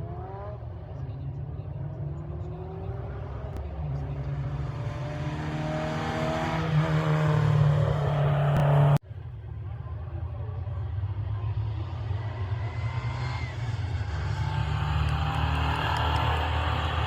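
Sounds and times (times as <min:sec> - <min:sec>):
racing engine accelerating past: 0:12.0 - 0:17.0.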